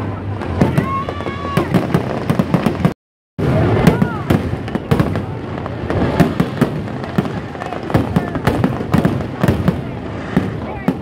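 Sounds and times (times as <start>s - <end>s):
voices of onlookers: 0.0s - 2.7s, 3.4s - 11.0s
fireworks bursting: 0.1s - 11.0s.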